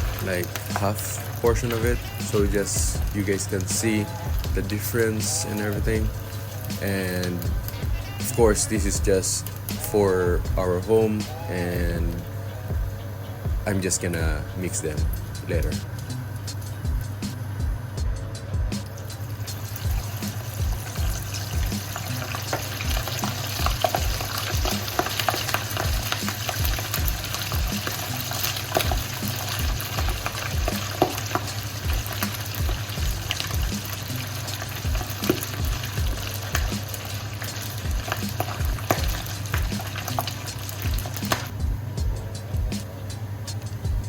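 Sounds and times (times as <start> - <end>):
meat deep-frying with crackling pops: 0.0 - 10.5, 18.9 - 41.6.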